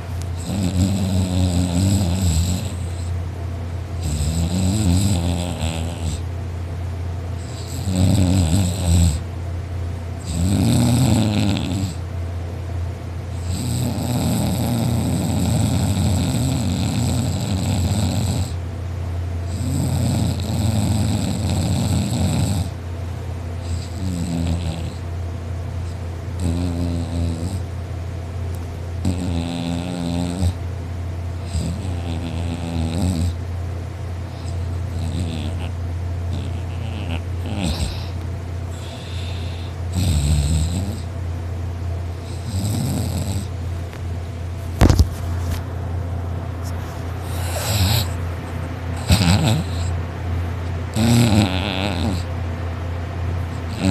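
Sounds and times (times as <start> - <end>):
steady low hum: 0.0 - 53.9
man snoring loudly: 0.4 - 3.1, 4.0 - 6.2, 7.5 - 9.2, 10.2 - 12.0, 13.4 - 18.6, 19.5 - 22.8, 23.7 - 25.0, 26.4 - 27.6, 29.0 - 30.6, 31.4 - 33.4, 34.9 - 35.7, 36.3 - 41.1, 42.3 - 43.5, 47.3 - 48.2, 49.0 - 50.0, 50.9 - 52.3, 53.7 - 53.9.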